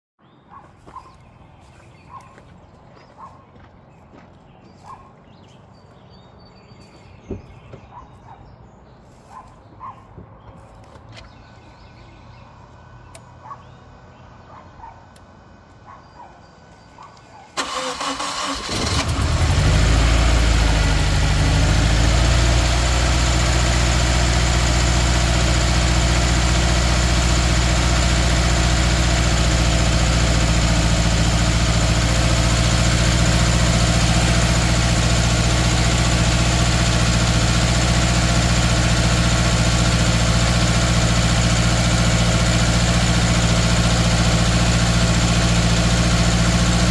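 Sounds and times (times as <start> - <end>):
car engine cranking and idling: 17.5 - 46.9.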